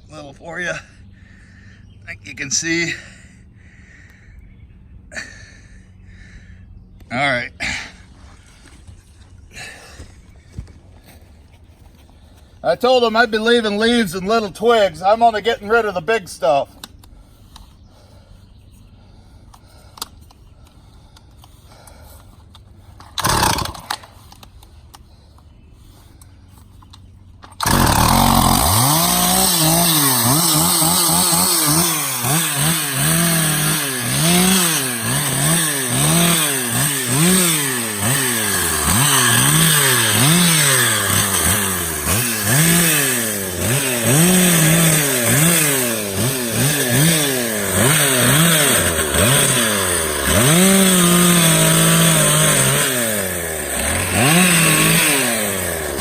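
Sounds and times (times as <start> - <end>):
chainsaw cutting wood: 20.9 - 24.7, 27.4 - 56.0.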